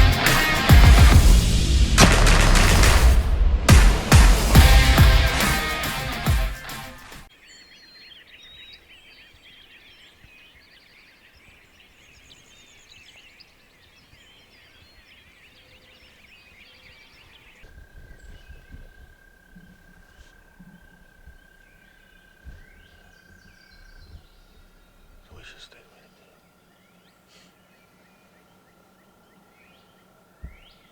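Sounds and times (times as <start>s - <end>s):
low thumps: 0.0s - 7.2s
steady high tone: 0.0s - 7.3s
songbirds chirping: 7.3s - 30.9s.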